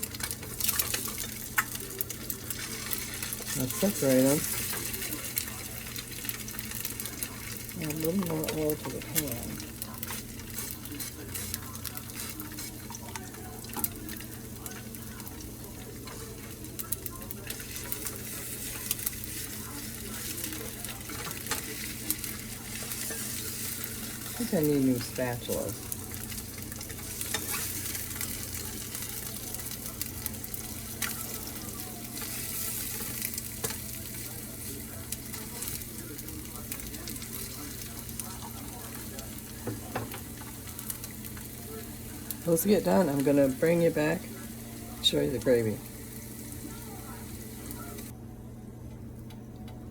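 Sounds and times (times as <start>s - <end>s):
spatula clicking against pan: 0.0s - 3.4s
eggs frying in a pan: 0.0s - 48.2s.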